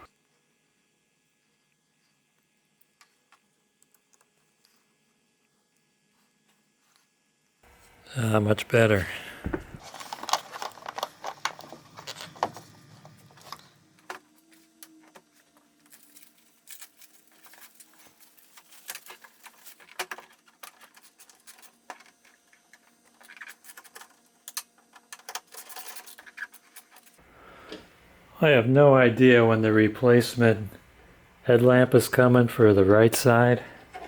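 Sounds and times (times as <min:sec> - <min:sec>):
small parts clicking and rattling: 0:09.8 - 0:27.2.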